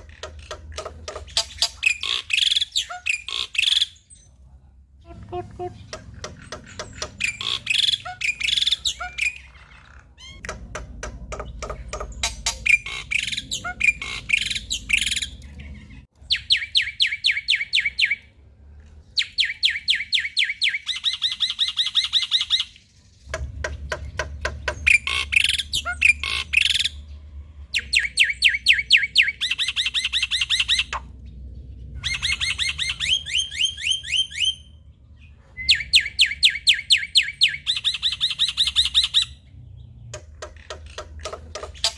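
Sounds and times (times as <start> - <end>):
myna singing chirps and squawks: 0.0 - 4.3, 5.0 - 10.7, 11.3 - 18.3, 19.1 - 41.9.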